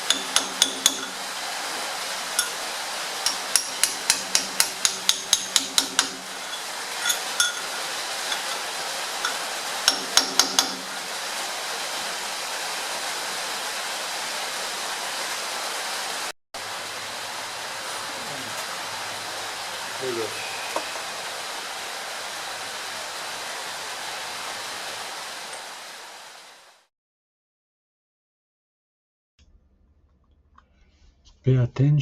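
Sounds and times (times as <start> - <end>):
hammer striking metal tool: 0.0 - 1.2, 3.3 - 8.6, 9.2 - 10.9
steady hiss: 0.0 - 26.9.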